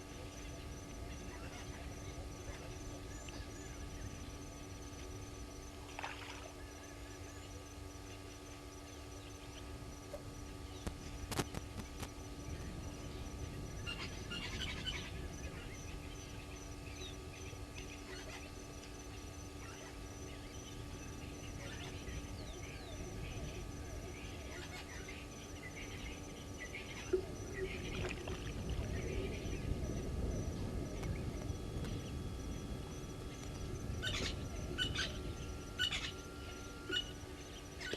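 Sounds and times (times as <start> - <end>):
faint bird chirps: 0.0 - 37.9
high pulsing insect call: 0.0 - 37.9
low steady hum: 0.0 - 37.9
steady low rumble: 8.4 - 37.9
repeating high-pitched chirp: 33.4 - 37.9.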